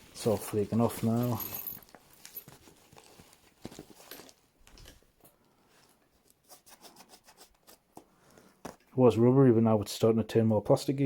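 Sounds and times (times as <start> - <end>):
bag contents clicking and scraping: 0.0 - 5.0.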